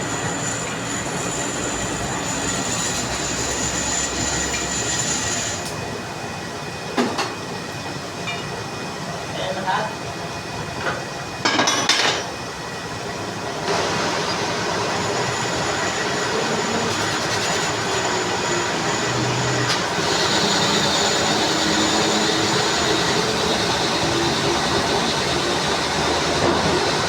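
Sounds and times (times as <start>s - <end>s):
metal lathe cutting: 0.0s - 6.0s, 13.0s - 27.0s.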